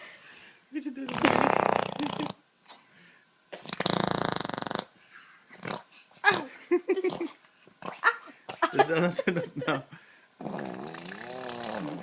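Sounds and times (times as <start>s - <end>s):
raspberry blown with the lips: 1.1s - 2.8s, 3.5s - 4.9s, 10.4s - 12.0s.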